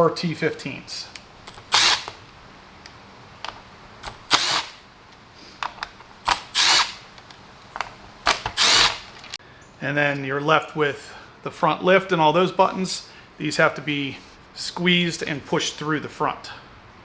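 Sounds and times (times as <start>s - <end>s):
cordless power driver spinning screws: 1.4s - 2.2s, 3.4s - 4.9s, 5.6s - 9.4s.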